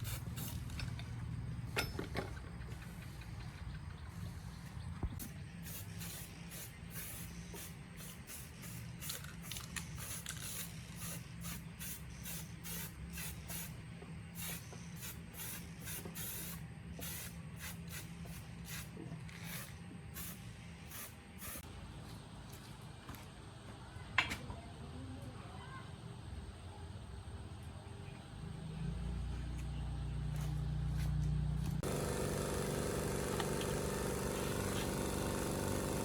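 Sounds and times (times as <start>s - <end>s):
short hissing spray bursts: 0.0s - 0.7s, 5.2s - 21.7s, 31.8s - 36.0s.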